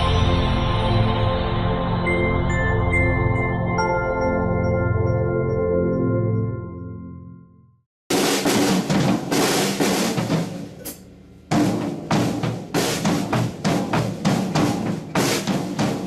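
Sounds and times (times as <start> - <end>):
drum kit beat: 8.1 - 16.0.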